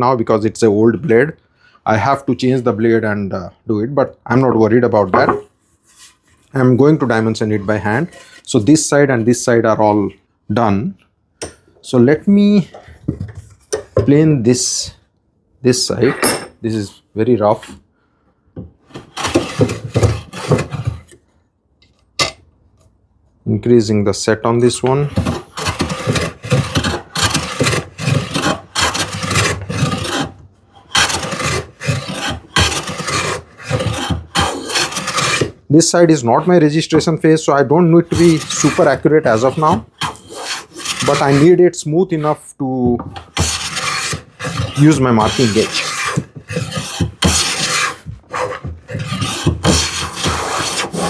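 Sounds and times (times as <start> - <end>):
hand plane rasping across wood: 5.2 - 8.5, 19.0 - 21.2, 24.7 - 35.6, 38.0 - 41.6, 43.1 - 51.0.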